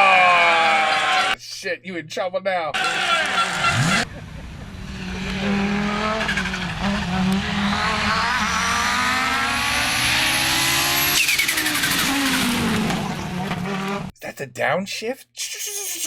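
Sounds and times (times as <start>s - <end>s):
rally car engine at full throttle: 2.8s - 14.1s.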